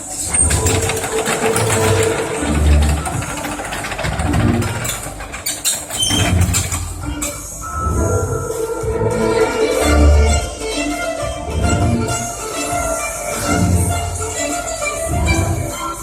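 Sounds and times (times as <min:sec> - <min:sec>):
excavator diesel engine running: 0:00.0 - 0:08.6.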